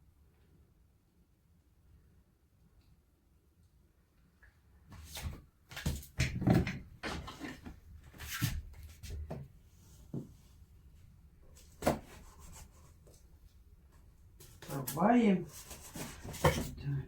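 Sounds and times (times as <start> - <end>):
objects knocking and clattering: 15.9 - 16.8.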